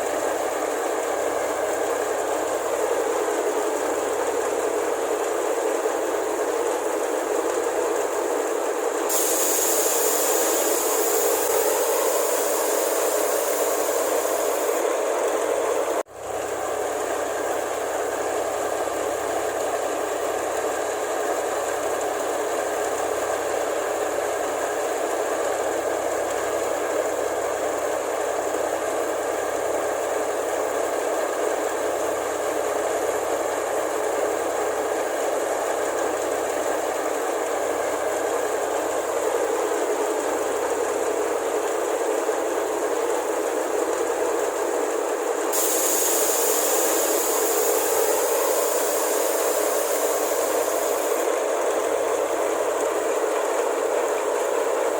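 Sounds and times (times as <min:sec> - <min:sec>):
harvester engine running hard: 0:00.0 - 0:54.9
high hiss: 0:09.1 - 0:14.9, 0:45.5 - 0:51.4.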